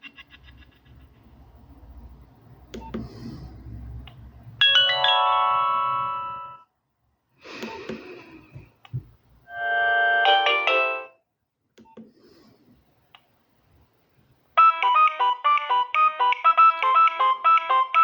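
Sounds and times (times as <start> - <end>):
phone ringtone melody: 4.6 - 6.6, 9.5 - 11.2, 14.6 - 18.0.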